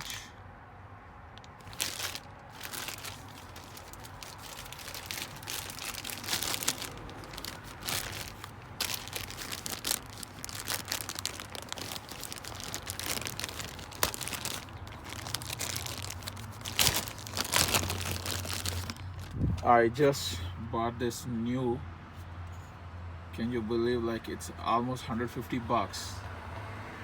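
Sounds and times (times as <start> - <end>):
packaging crinkling and rustling: 0.0 - 0.3, 1.4 - 19.7.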